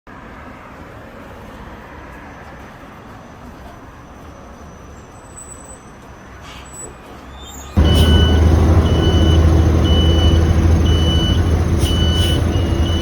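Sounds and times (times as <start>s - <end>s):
distant traffic rumble: 7.8s - 13.0s.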